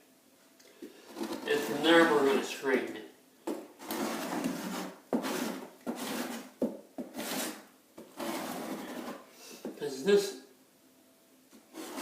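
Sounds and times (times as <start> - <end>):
scraper rasping on wooden floor: 1.0 - 2.2, 3.8 - 9.3, 11.7 - 12.0.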